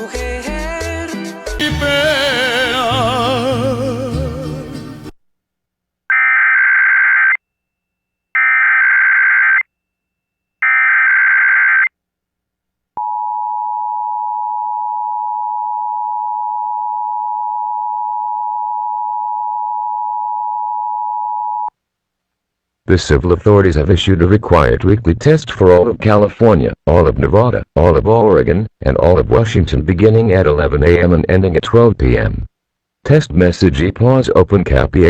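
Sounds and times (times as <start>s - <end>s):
music: 0.0s - 5.2s.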